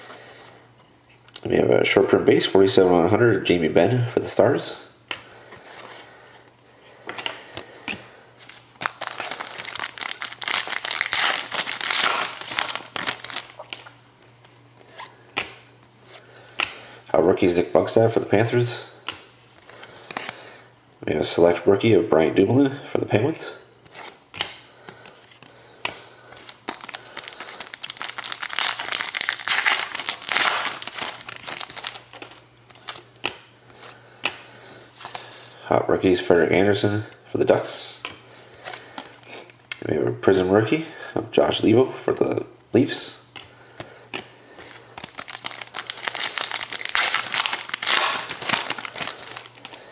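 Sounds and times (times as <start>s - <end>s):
plastic wrapper crinkling and tearing: 8.4s - 13.9s, 26.4s - 33.0s, 45.0s - 49.9s.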